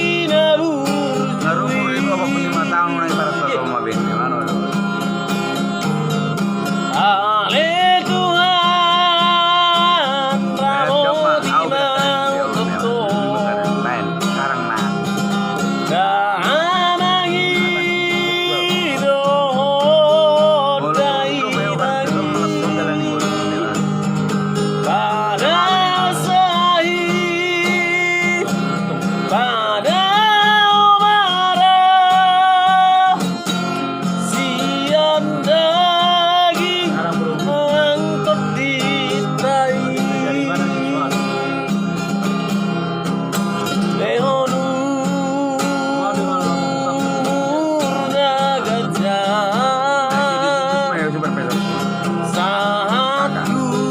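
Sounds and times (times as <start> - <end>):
song with guitar accompaniment: 0.0 - 53.9.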